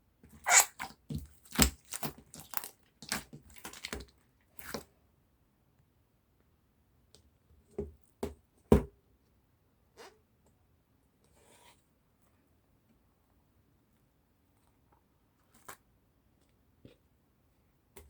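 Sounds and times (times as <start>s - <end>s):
slime popping and crackling: 0.4s - 4.0s.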